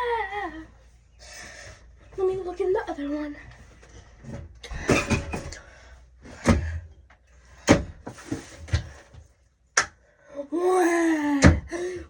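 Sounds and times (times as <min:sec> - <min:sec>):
items knocking and clattering: 0:04.2 - 0:05.6.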